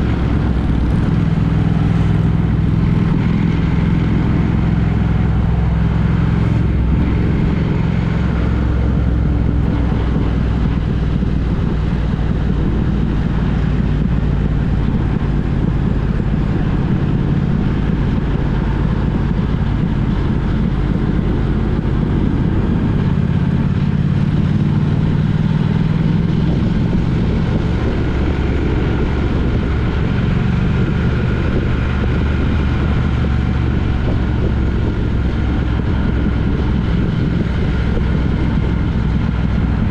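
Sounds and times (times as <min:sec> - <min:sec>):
road noise: 0:00.0 - 0:39.9
vehicle engine hum: 0:00.0 - 0:39.9.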